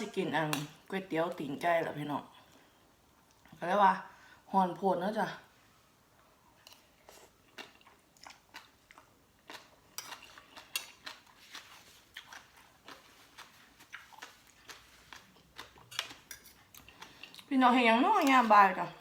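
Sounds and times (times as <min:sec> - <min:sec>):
chewing and lip smacks: 0:06.7 - 0:17.5.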